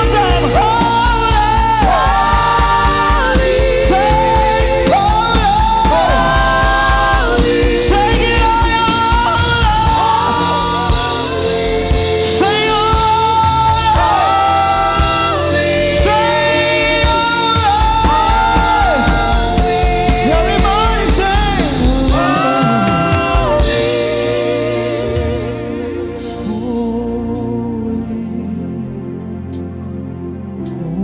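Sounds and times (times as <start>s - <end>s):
instrumental backing: 0.0s - 31.0s
singers in harmony: 0.0s - 31.0s.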